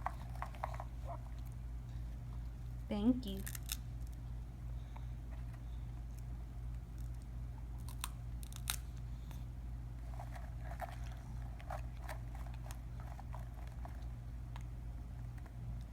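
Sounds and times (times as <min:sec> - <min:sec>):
child chewing crunchy snacks: 0:00.0 - 0:02.6, 0:07.8 - 0:15.9
steady low hum: 0:00.0 - 0:15.9.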